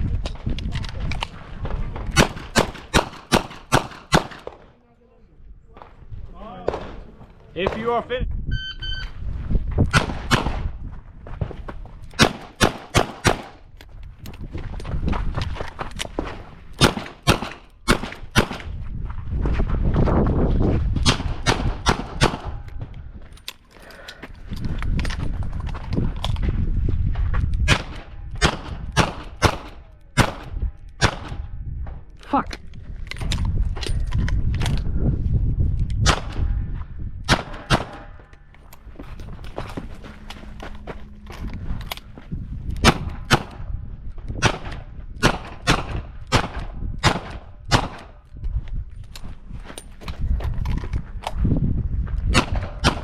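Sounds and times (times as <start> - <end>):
revolver gunshots: 2.2 - 4.6, 12.2 - 13.6, 16.8 - 18.6, 37.2 - 38.1, 44.4 - 48.2.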